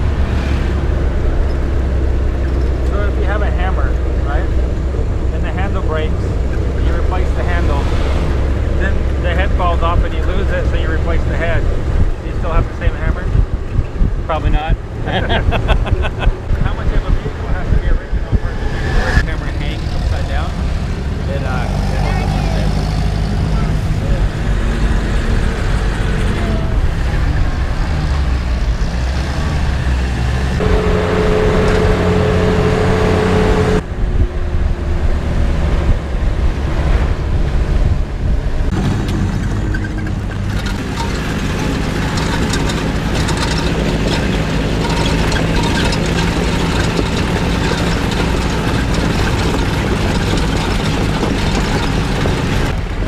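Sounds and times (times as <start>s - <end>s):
steady whine: 0.0s - 20.5s, 30.6s - 35.0s
engine running under load: 0.0s - 53.0s.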